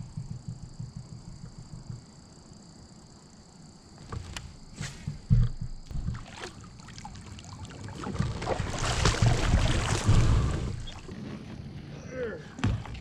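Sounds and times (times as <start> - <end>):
kayak gear knocking: 0.0 - 2.2, 4.0 - 6.4.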